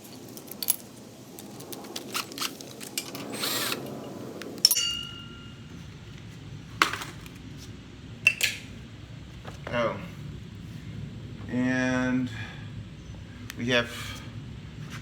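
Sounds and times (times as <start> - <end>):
metal tools clicking and clinking: 0.0 - 5.6
power drill whirring: 2.2 - 4.0
sharp ringing metal clank: 4.6 - 5.7.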